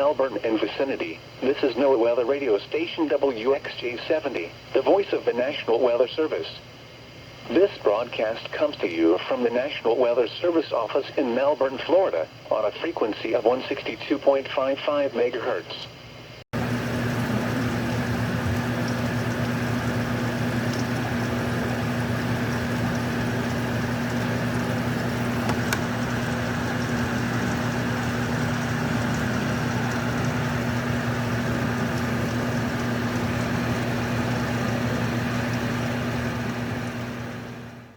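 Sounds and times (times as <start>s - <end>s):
radio static hiss: 0.0s - 6.7s, 7.4s - 16.0s
low electrical hum: 0.0s - 37.9s.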